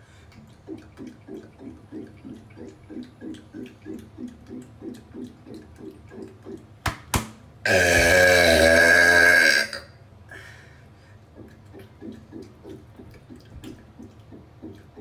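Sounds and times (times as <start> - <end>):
person gulping a drink: 0.2 - 6.8, 7.7 - 9.9, 11.2 - 15.0
loud burp: 7.6 - 9.9.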